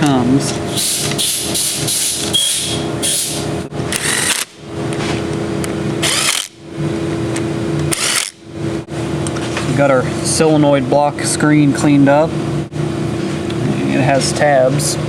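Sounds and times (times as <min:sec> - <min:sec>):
power drill driving screws: 0:00.7 - 0:04.6, 0:06.0 - 0:06.6, 0:07.9 - 0:08.4.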